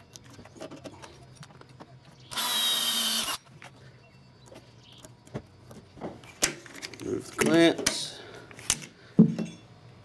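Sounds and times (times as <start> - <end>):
power drill drilling: 2.3 - 3.4.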